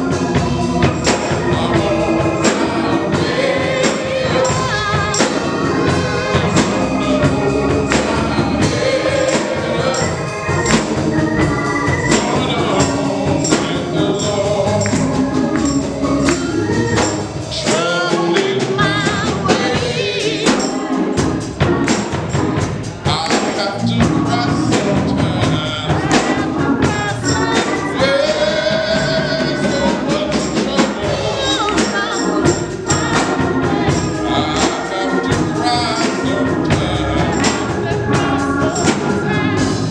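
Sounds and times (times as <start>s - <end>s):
choir singing with a band: 0.0s - 39.9s
tambourine shaking: 0.8s - 18.0s, 25.7s - 39.7s.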